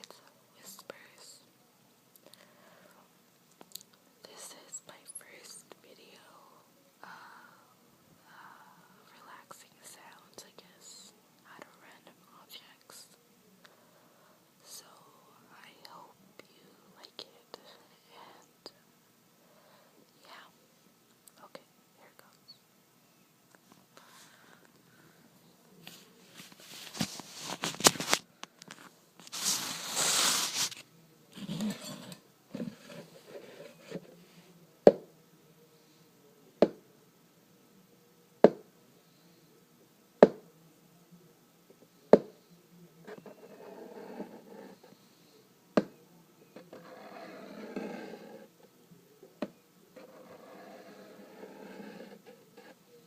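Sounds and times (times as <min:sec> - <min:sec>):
scratching and rustling: 0:25.8 - 0:34.2.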